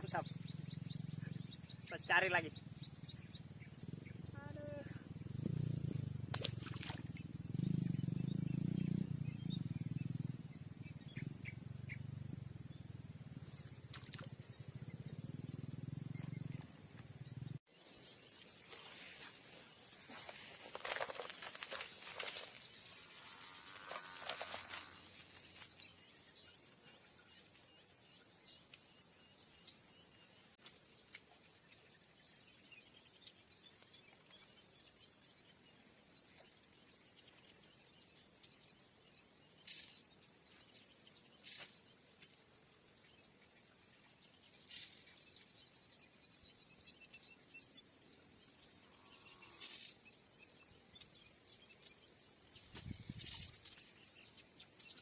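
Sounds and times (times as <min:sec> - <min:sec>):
high-pitched insect drone: 0:20.1 - 0:25.7.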